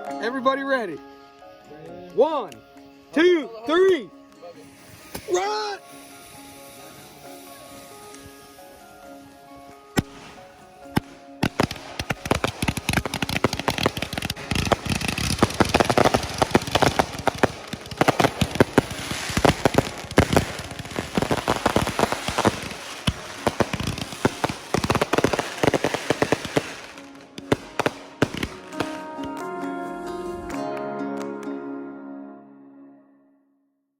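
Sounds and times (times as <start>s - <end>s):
firework rapid cracks and pops: 10.0s - 29.5s.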